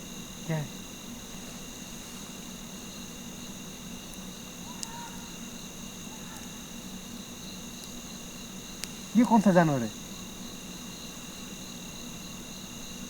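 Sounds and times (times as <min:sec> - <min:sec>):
crickets trilling: 0:00.0 - 0:13.0
faint animal call: 0:04.6 - 0:06.8.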